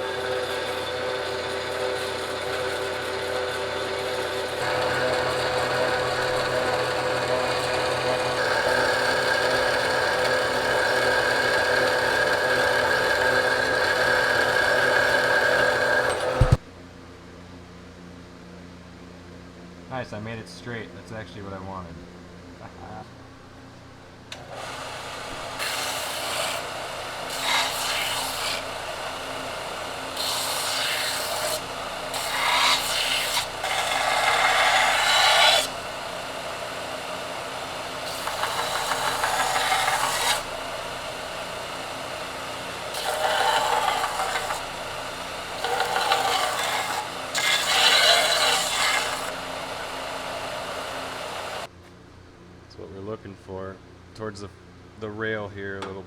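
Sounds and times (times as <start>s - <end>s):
bench grinder running: 0.0s - 16.6s, 24.3s - 51.7s
metal rasping against grinder: 0.0s - 16.6s, 24.6s - 51.7s.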